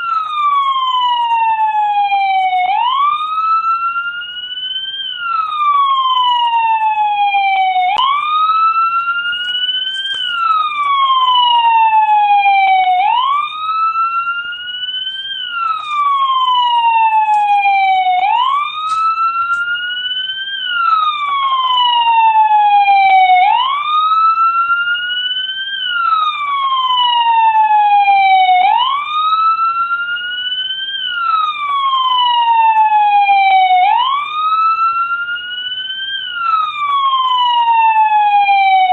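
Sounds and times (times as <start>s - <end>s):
police siren wailing: 0.0s - 38.9s.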